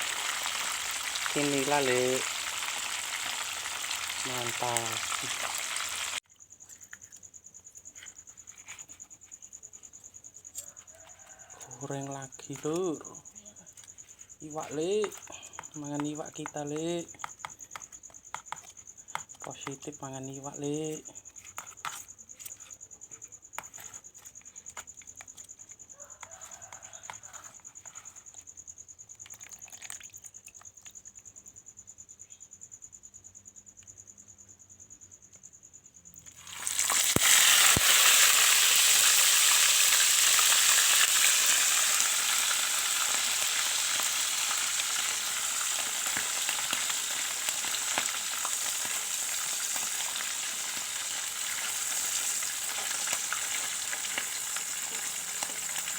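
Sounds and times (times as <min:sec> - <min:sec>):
fish sizzling in hot oil: 0:00.0 - 0:06.2, 0:36.3 - 0:55.9
high insect trill: 0:00.0 - 0:55.9.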